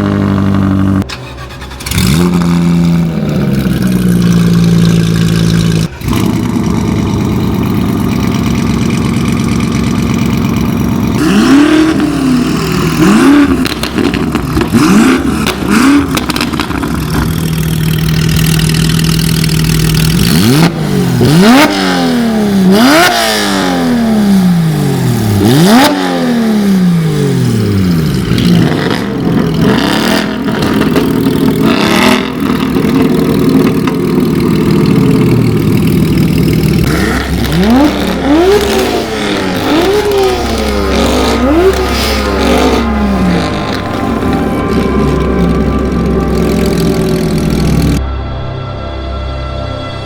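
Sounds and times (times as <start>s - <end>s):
car engine idling and revving: 0.0s - 49.9s.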